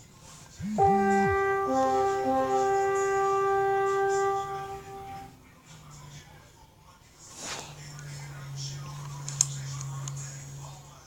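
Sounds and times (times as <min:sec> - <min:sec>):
low sliding note: 0:00.6 - 0:05.3
horn-like musical chord: 0:00.6 - 0:05.4.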